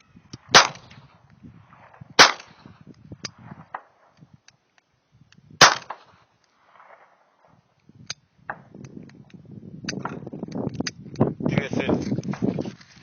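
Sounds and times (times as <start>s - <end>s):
pistol shots with echo: 0.5s - 1.1s, 1.7s - 2.8s, 5.6s - 7.6s.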